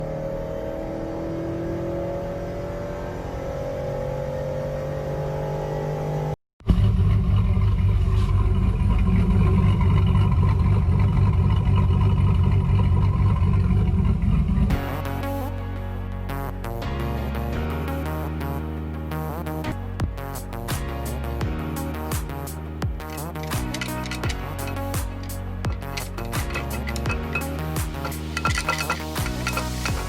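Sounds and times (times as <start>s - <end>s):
car engine running: 6.6s - 14.8s, 22.8s - 30.0s
choppy uneven exhaust: 6.6s - 14.8s, 22.4s - 30.0s.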